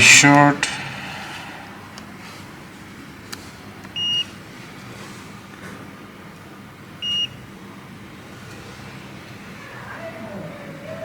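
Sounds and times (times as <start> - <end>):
multimeter continuity beep: 4.0 - 4.4, 7.0 - 7.4.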